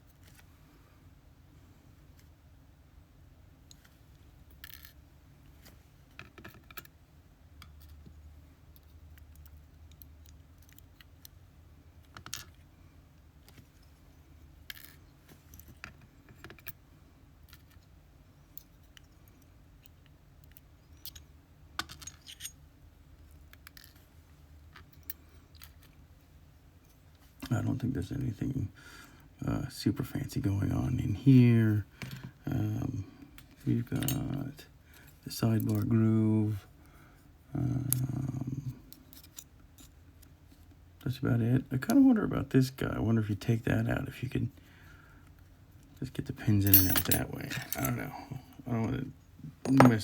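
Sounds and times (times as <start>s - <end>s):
faint low hum: 0.0s - 50.0s
metal lock parts clicking: 21.8s - 22.6s, 46.6s - 48.0s, 49.5s - 50.0s.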